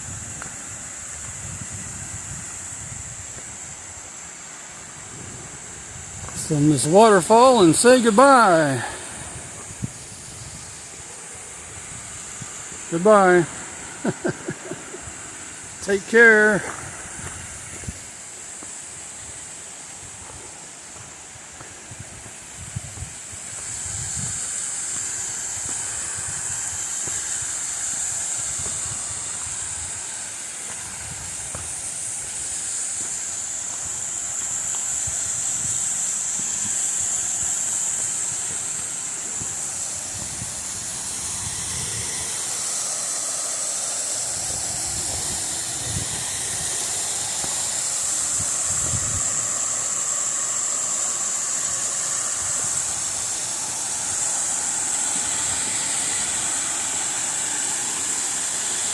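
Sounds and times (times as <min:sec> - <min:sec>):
wind rumble on microphone: 0:00.0 - 0:04.2, 0:04.8 - 0:06.6, 0:08.9 - 0:12.9, 0:16.6 - 0:18.2, 0:20.0 - 0:33.1, 0:39.4 - 0:42.5, 0:44.2 - 0:49.6
waterfall roaring: 0:06.4 - 0:21.6, 0:24.4 - 0:58.9.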